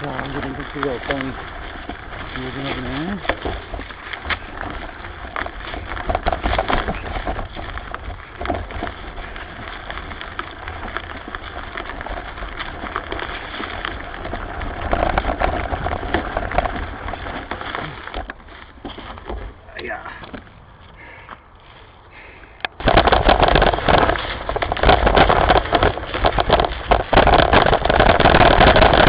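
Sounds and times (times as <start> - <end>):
dry leaves crackling underfoot: 0.0 - 29.0
low microphone rumble: 0.0 - 29.0.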